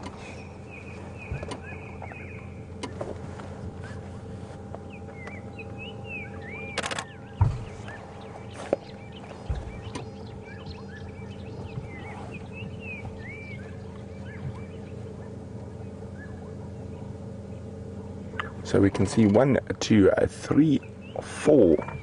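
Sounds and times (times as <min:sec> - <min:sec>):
birds chirping and whistling: 0:00.0 - 0:19.3, 0:20.4 - 0:22.0
steady low hum: 0:00.0 - 0:22.0
low thumps: 0:06.6 - 0:17.3.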